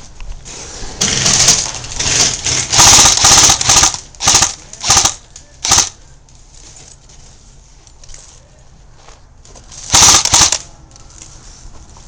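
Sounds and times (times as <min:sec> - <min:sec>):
airsoft gun rapid firing: 0:01.0 - 0:06.0, 0:09.9 - 0:10.7.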